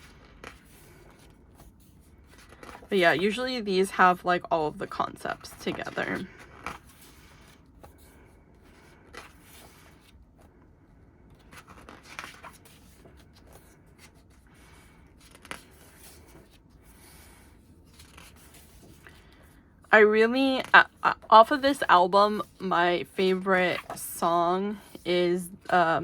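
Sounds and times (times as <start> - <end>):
paper pages rustling: 0.0 - 4.2, 4.8 - 10.6, 11.3 - 19.6, 23.4 - 24.0.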